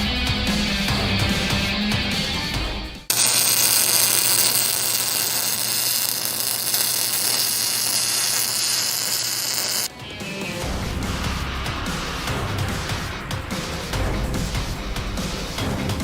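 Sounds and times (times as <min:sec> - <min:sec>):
welding arc buzzing and hissing: 0:03.1 - 0:09.9.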